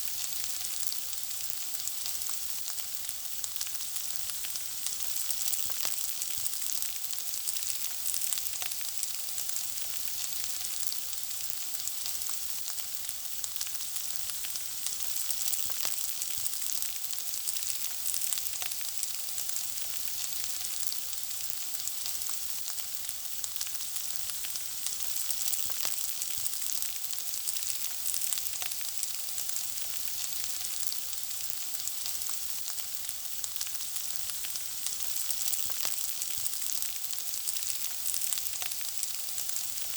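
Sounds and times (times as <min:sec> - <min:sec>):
food sizzling in hot oil: 0:00.0 - 0:39.9.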